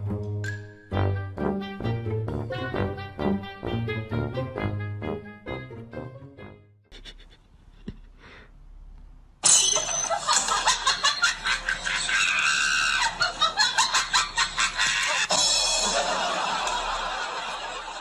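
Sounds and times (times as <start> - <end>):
harsh shrieking: 12.1 - 13.2.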